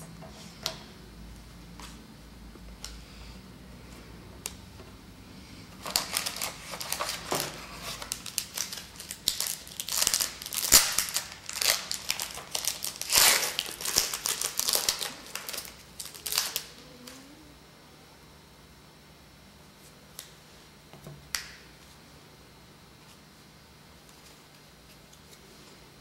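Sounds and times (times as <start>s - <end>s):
foil wrapper crinkling: 5.8s - 16.8s.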